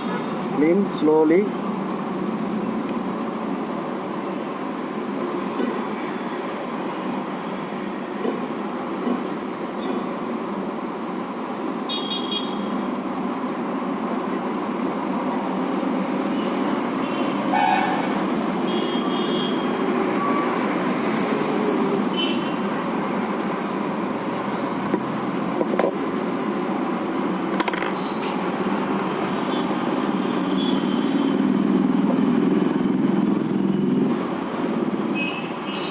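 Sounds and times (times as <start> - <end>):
street traffic noise: 0.0 - 35.9
vehicle horn toots: 11.9 - 12.7, 17.1 - 18.1.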